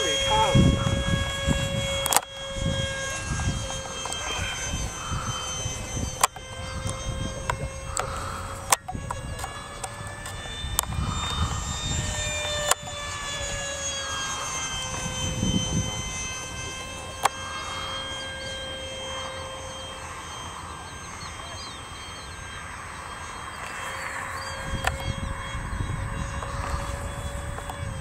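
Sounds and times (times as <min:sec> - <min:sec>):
low rumbling: 0:00.0 - 0:28.0
model airplane motor whine: 0:00.0 - 0:28.0.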